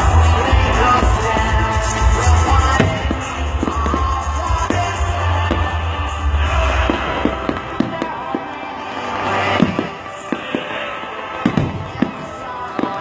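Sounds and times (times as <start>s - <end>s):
fireworks bangs and pops: 0.0s - 6.1s, 6.7s - 10.8s, 11.4s - 13.0s
music with deep bass: 0.0s - 10.4s.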